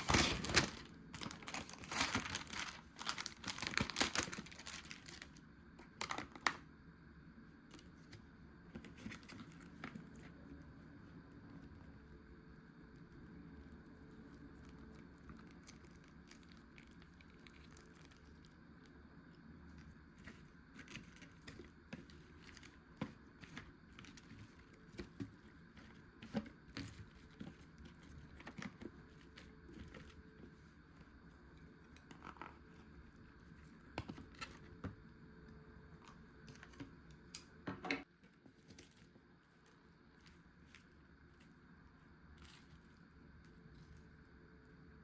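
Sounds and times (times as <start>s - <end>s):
plastic packaging crinkling: 0.0s - 6.6s, 19.9s - 31.1s.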